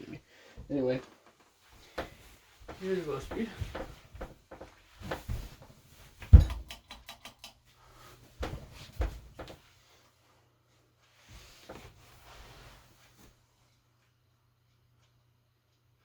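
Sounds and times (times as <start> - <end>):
thumps and knocks: 1.9 - 7.1, 8.4 - 9.6.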